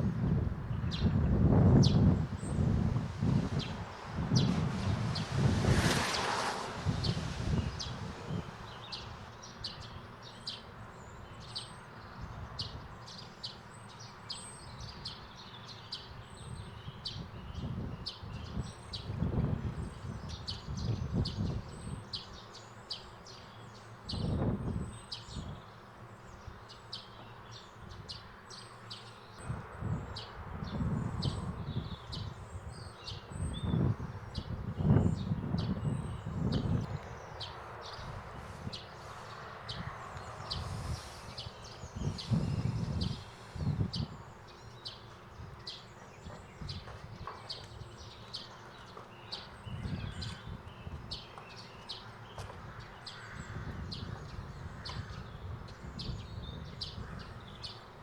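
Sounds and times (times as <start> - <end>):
small birds chirping: 0.7 - 58.0.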